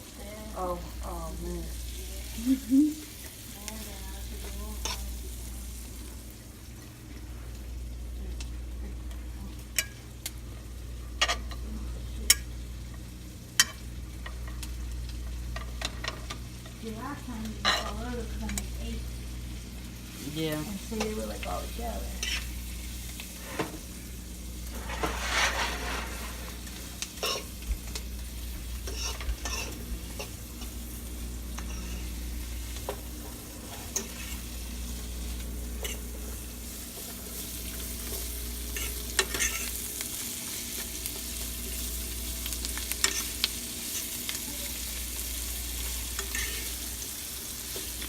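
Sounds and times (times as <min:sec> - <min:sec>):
asparagus sizzling in frying pan: 0:00.0 - 0:48.0.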